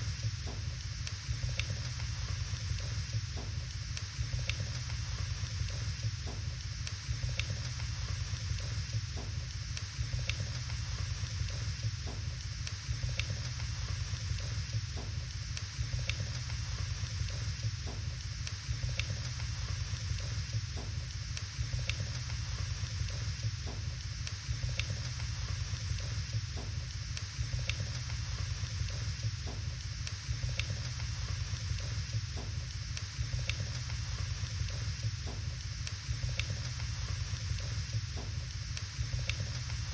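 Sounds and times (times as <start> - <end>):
logs burning in fireplace: 0.0 - 39.9
fire crackles and pops: 0.1 - 39.9.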